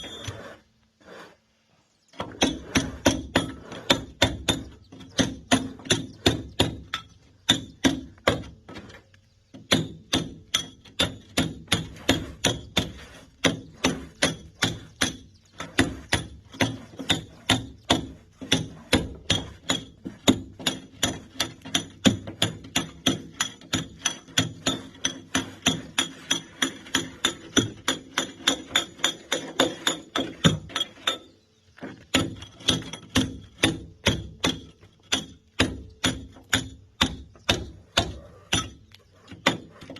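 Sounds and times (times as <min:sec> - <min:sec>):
hammer striking steel chisel: 0:09.7 - 0:31.3, 0:32.1 - 0:39.9.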